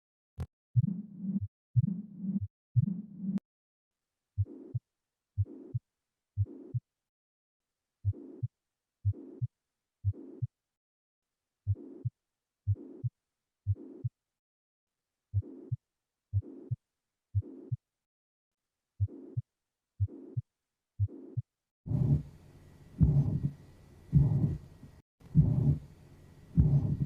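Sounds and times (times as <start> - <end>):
heartbeat: 0.8 - 3.4, 5.4 - 5.8, 6.4 - 6.8, 8.0 - 10.5, 11.7 - 12.1, 12.7 - 13.1, 13.7 - 14.2, 15.3 - 16.8, 17.4 - 17.8, 19.0 - 19.4, 20.0 - 20.4, 21.0 - 22.3, 23.0 - 25.9, 26.5 - 27.0
whooshing heart murmur: 21.9 - 22.3, 23.0 - 24.7, 25.3 - 25.9, 26.5 - 27.0.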